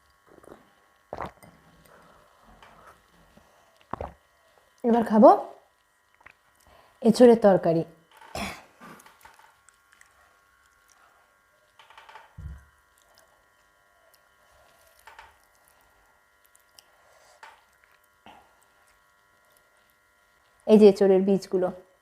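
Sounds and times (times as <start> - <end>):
faint steady hum: 0.0 - 22.0
squishes and smacks of eating: 5.7 - 6.7, 8.9 - 20.6.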